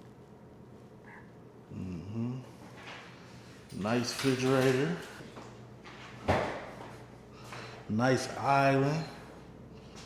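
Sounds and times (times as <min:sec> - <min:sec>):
man murmuring: 0:01.7 - 0:02.6.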